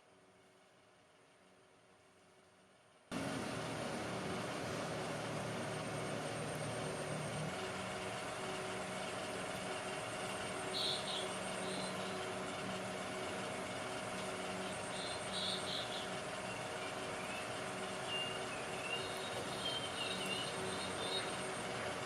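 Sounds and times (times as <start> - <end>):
power tool motor running: 3.1 - 22.0.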